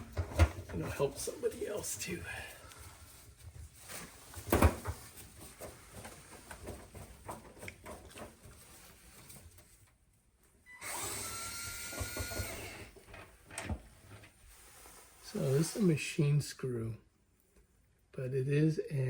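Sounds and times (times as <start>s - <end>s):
tool tapping on metal and plastic: 0.0s - 0.9s, 11.9s - 14.3s
steady hiss with faint whine: 12.4s - 17.2s.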